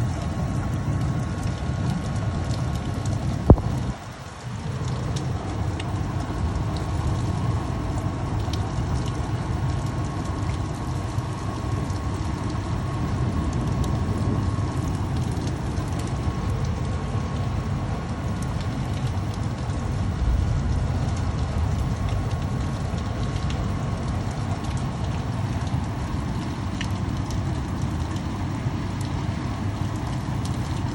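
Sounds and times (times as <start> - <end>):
heavy rain falling: 0.0 - 30.9
low rumble: 0.1 - 9.1, 13.1 - 26.9.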